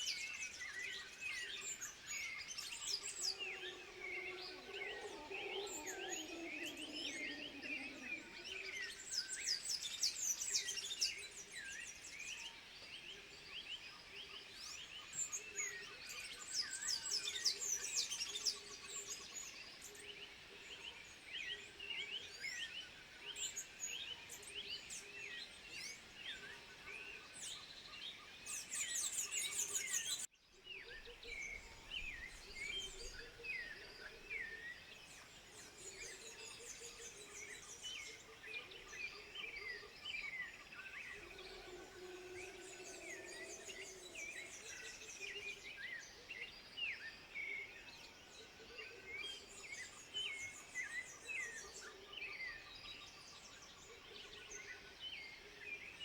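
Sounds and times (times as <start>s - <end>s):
chorus of animal chirps and whistles: 0.0s - 12.4s, 30.9s - 56.0s.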